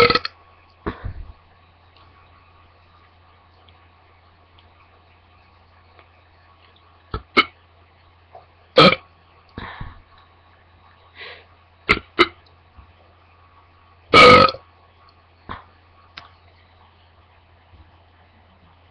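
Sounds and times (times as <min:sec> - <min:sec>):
woman burping: 0:00.0 - 0:00.3, 0:08.8 - 0:09.0, 0:14.2 - 0:14.6.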